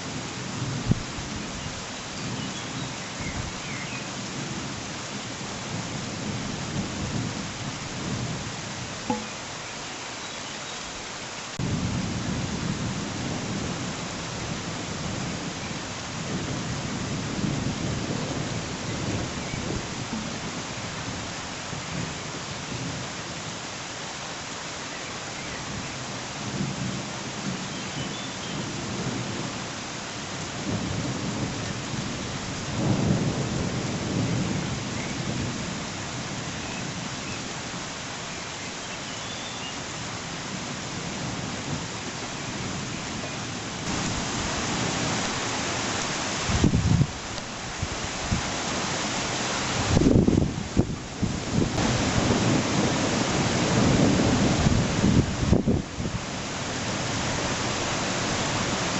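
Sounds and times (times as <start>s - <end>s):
heavy rain falling: 0.0s - 58.9s
thunder rumbling: 11.6s - 22.1s, 30.6s - 35.8s, 43.8s - 48.5s, 49.8s - 56.2s.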